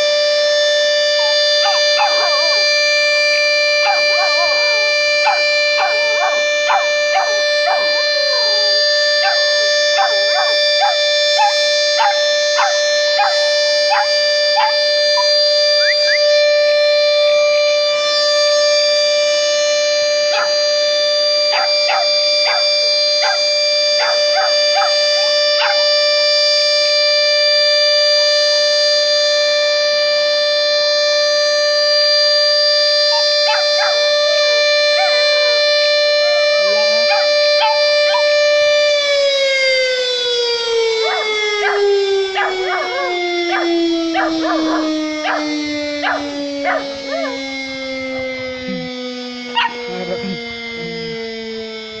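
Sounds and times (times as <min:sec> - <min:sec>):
air-raid siren steady tone: 0:00.0 - 0:52.0
dogs barking: 0:01.1 - 0:02.8, 0:03.8 - 0:16.2, 0:20.3 - 0:20.6, 0:21.5 - 0:25.9, 0:33.1 - 0:35.6, 0:36.6 - 0:38.4, 0:40.9 - 0:47.5, 0:49.5 - 0:50.5.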